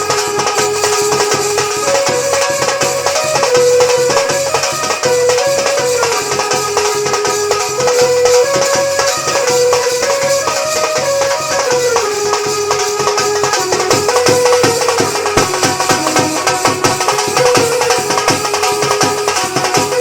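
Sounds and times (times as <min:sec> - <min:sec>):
folk dance melody: 0:00.0 - 0:20.0
steady percussion: 0:00.0 - 0:20.0.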